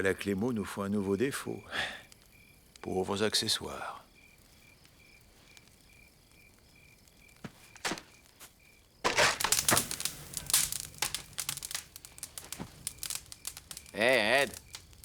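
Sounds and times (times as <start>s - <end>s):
campfire crackling and snapping: 0.0s - 15.0s
crickets chirping: 0.0s - 15.0s.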